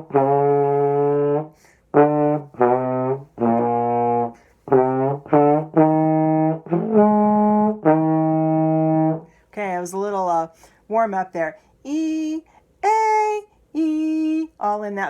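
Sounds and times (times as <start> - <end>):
trombone playing held notes: 0.0 - 9.3.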